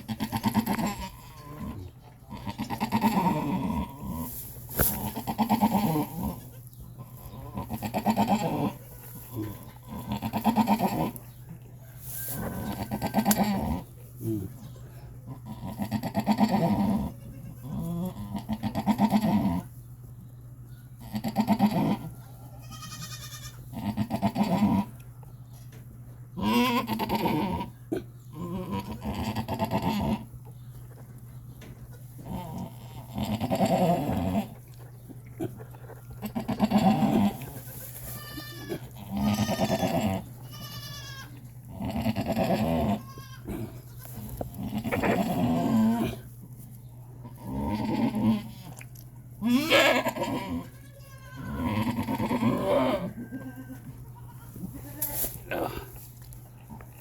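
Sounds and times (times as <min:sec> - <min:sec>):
goats bleating: 0:00.0 - 0:11.2, 0:15.4 - 0:19.7, 0:21.1 - 0:25.0, 0:26.4 - 0:27.8, 0:35.4 - 0:46.4, 0:47.2 - 0:48.8, 0:49.4 - 0:56.1
steady low hum: 0:00.0 - 0:57.0.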